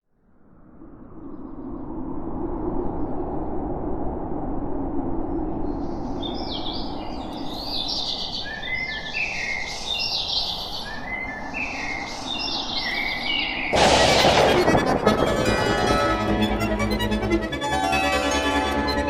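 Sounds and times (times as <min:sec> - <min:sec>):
music: 0:13.8 - 0:19.0.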